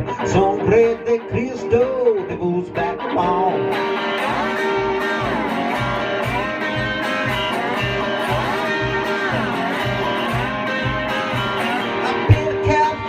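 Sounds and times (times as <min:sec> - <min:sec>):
country guitar instrumental: 0:00.0 - 0:13.0
steady bass beat: 0:04.3 - 0:13.0.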